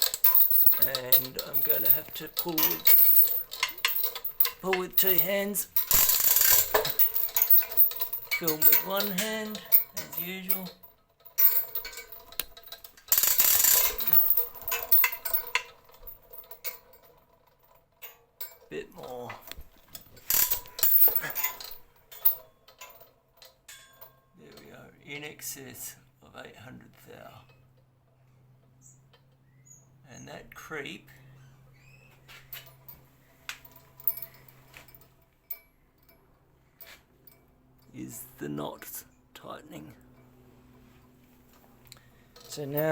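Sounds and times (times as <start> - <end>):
ratchet pawl clicking: 0.0 - 10.6, 11.4 - 16.5, 20.3 - 21.3
hand chain rattling: 0.0 - 24.7, 32.5 - 38.0, 42.0 - 42.9.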